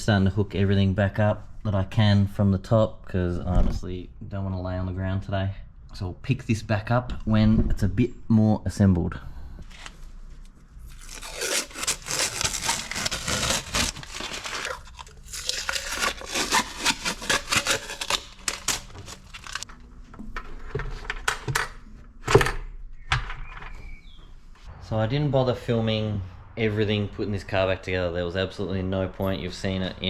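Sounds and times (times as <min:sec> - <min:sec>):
hands crinkling and rustling parts: 0:09.7 - 0:21.8.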